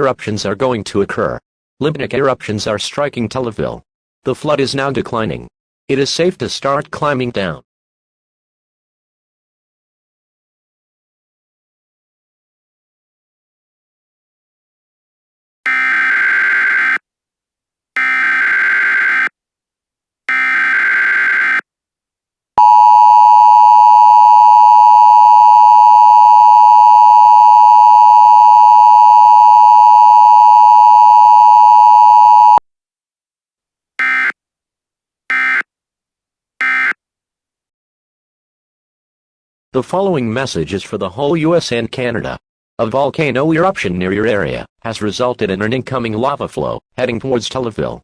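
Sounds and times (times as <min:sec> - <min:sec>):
two-tone attention signal: 0:22.6 - 0:32.6, 0:36.6 - 0:37.0.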